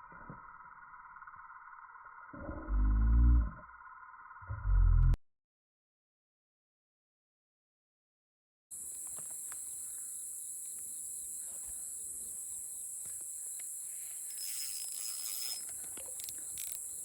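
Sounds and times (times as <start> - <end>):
insects chirring: 0.0 - 4.5, 8.7 - 17.0
faint clicks: 13.0 - 17.0.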